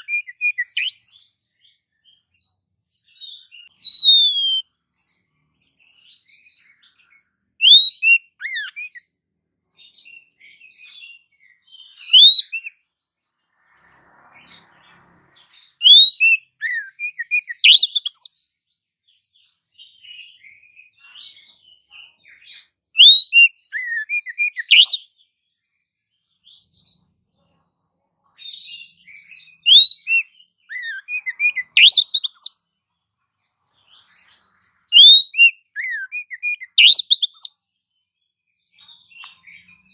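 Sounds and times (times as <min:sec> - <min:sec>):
high sharp bird chirps: 0:00.0 - 0:09.1, 0:09.9 - 0:18.4, 0:20.1 - 0:25.1, 0:28.5 - 0:32.7, 0:33.8 - 0:37.6.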